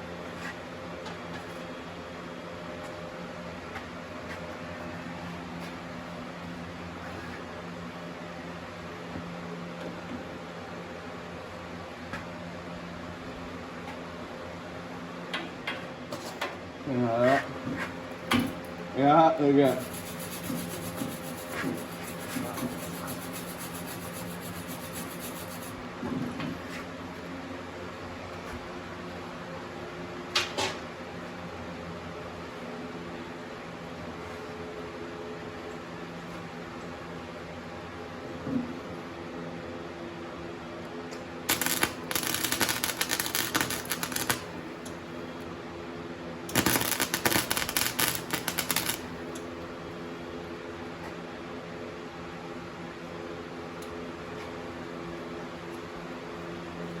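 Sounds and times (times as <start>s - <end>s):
cooling fan humming: 7.9s - 26.0s, 40.0s - 50.9s
scraping on metal: 19.6s - 25.8s
steady low hum: 19.6s - 26.7s
welding arc crackling: 19.7s - 25.7s, 41.5s - 44.6s, 46.5s - 49.1s.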